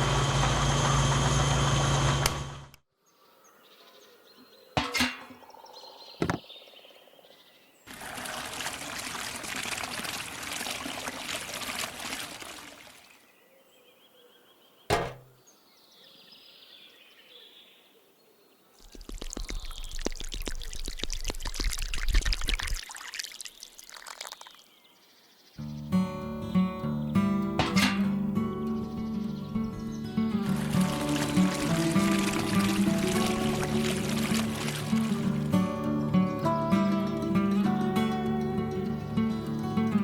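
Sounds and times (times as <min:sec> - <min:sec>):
material being poured: 0:07.9 - 0:13.1, 0:18.8 - 0:24.6, 0:30.4 - 0:35.7
sharp knocks: 0:14.9 - 0:15.4.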